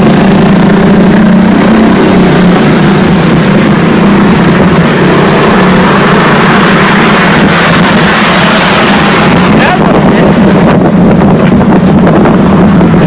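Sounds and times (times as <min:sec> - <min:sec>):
road traffic rumble: 0:00.0 - 0:13.0.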